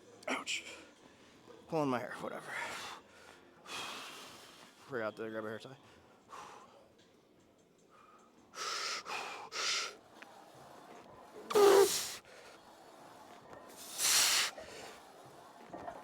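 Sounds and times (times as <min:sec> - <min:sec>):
man breathing hard: 0:07.9 - 0:10.0, 0:13.8 - 0:14.6
man grunting with strain: 0:11.5 - 0:12.0.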